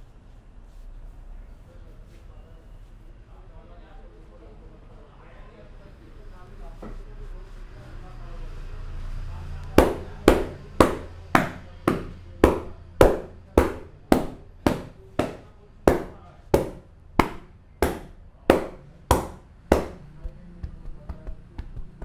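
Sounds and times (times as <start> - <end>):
hands slapping head: 9.8 - 20.1.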